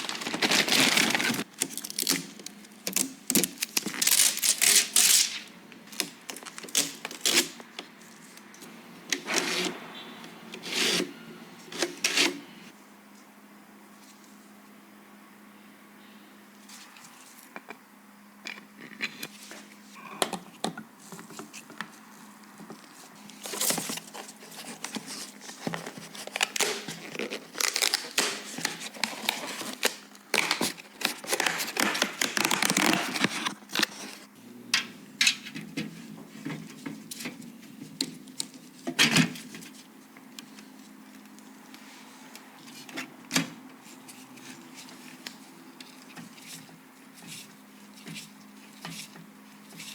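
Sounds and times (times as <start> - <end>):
packaging crinkling and rustling: 0.0 - 8.7, 21.0 - 34.3.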